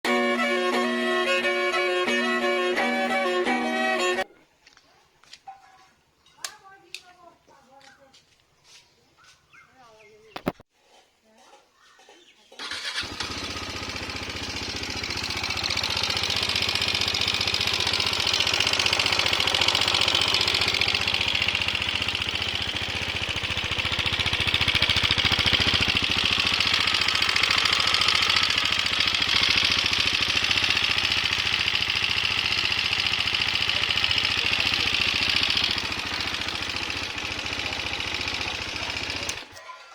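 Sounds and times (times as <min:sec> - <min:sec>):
motorcycle engine running: 0:12.6 - 0:39.6.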